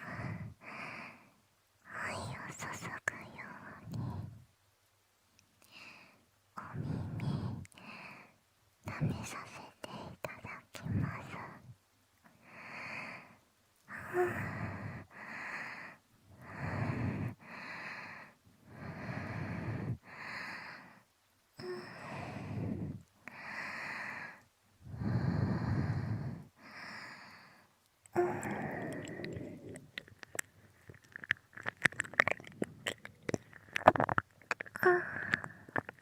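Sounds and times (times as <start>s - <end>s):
slow heavy breathing: 12.3s - 33.7s, 34.5s - 36.0s
wet mouth clicks and licking: 28.0s - 36.0s.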